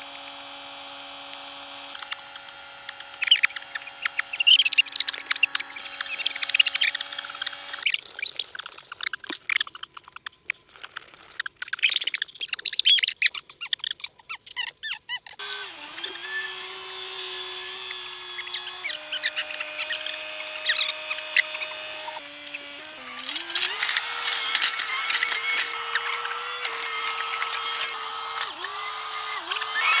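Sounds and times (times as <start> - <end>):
small electric motor whining: 0.0 - 8.7, 15.3 - 30.0
sharp clicks and scratchy ticks: 1.0 - 30.0
rat squeaking: 3.2 - 10.2, 11.4 - 30.0.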